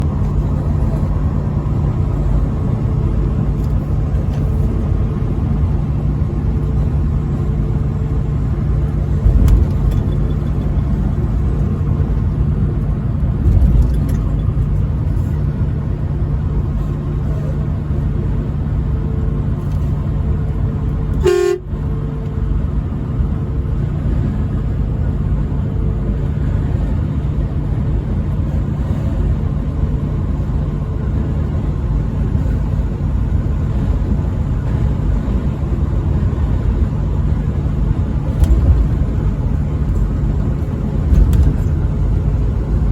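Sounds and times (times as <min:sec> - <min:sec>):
low bumps: 0:00.0 - 0:16.8, 0:33.5 - 0:42.9
truck road and engine noise: 0:00.0 - 0:42.9
truck horn blast: 0:21.2 - 0:21.8.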